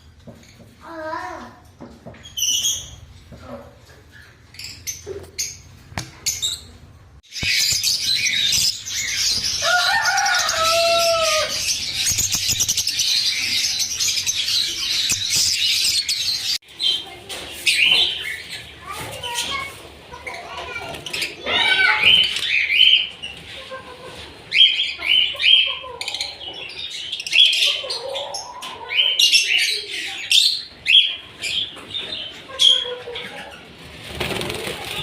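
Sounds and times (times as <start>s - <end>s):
lovebirds chattering shrill chirps: 4.1s - 19.5s.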